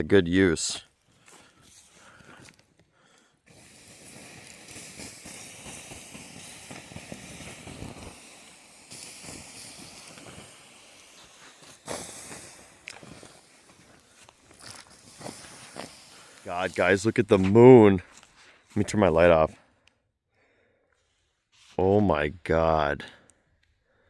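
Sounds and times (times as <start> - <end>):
campfire coals hissing and sizzling: 0.0 - 19.5
sharp pops: 3.5 - 17.8.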